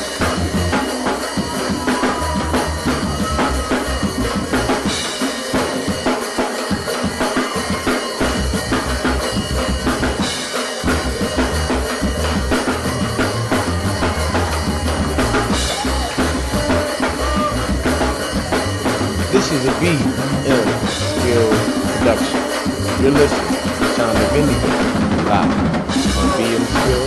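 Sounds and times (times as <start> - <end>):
drum kit: 0.0 - 27.0
live band playing: 0.0 - 27.0
bass guitar: 2.2 - 4.9, 8.3 - 10.2, 10.9 - 27.0.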